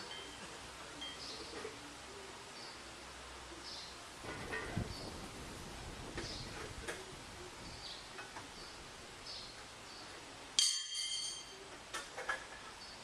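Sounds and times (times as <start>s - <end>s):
bright ringing clink: 10.6s - 11.6s.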